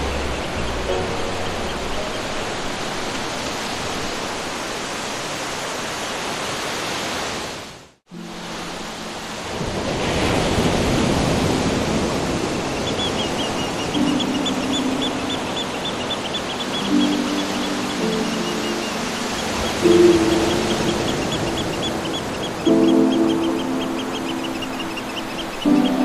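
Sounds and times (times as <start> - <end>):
low held music notes: 0.0 - 3.0, 13.8 - 26.0
rushing water-like noise: 0.0 - 26.0
sea waves: 0.0 - 26.0.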